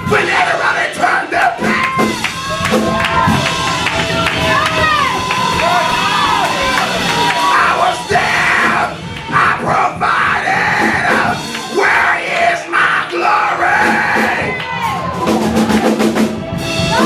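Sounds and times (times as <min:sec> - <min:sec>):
church music with drums: 0:00.0 - 0:17.0
congregation yelling: 0:00.0 - 0:17.0.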